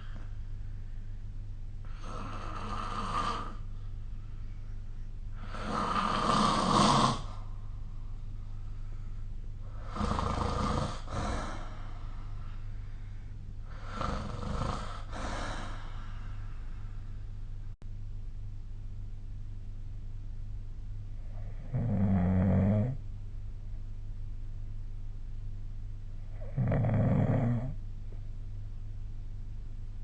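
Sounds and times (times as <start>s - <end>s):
steady low hum: 0.0s - 30.0s
person snoring: 1.9s - 3.7s, 5.4s - 7.4s, 9.6s - 12.2s, 13.7s - 16.5s, 21.2s - 23.0s, 26.3s - 27.8s.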